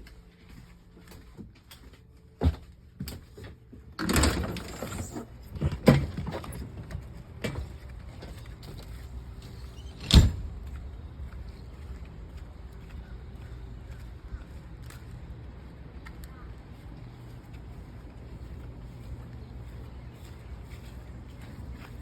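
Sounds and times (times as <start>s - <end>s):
door and steps knocks and clunks: 2.4s - 9.0s, 9.9s - 10.8s
door banging shut: 4.0s - 6.7s, 9.9s - 10.6s.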